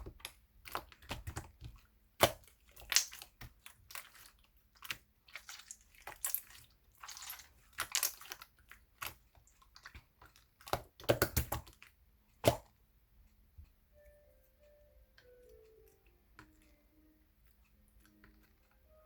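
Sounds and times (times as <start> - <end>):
hands squelching slime: 0.0 - 12.9
sticky clicks and pops: 7.8 - 12.8.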